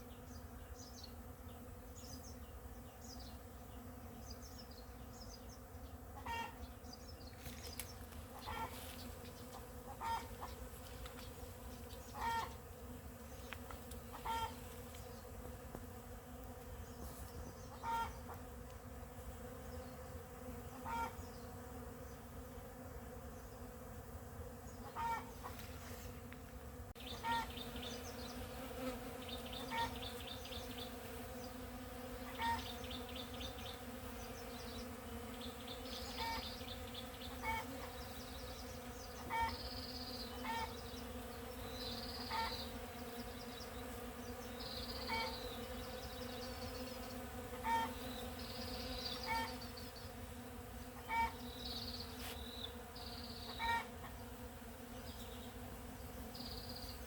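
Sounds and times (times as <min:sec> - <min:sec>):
bees buzzing: 0:00.0 - 0:57.0
bird calling: 0:09.9 - 0:10.6, 0:12.0 - 0:12.6, 0:14.1 - 0:14.6, 0:17.7 - 0:18.3, 0:20.7 - 0:21.3, 0:24.8 - 0:25.6, 0:27.0 - 0:27.8, 0:29.3 - 0:30.6, 0:32.3 - 0:33.3, 0:36.0 - 0:37.9, 0:39.3 - 0:39.7, 0:40.3 - 0:40.9, 0:42.1 - 0:42.7, 0:44.9 - 0:45.6, 0:47.6 - 0:48.1, 0:48.9 - 0:49.8, 0:51.0 - 0:52.0, 0:53.3 - 0:53.9.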